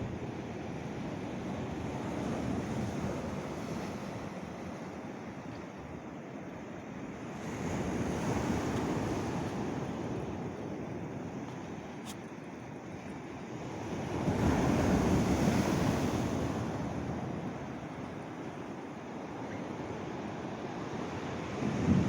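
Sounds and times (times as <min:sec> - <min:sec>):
sea surf washing ashore: 0:06.4 - 0:22.0.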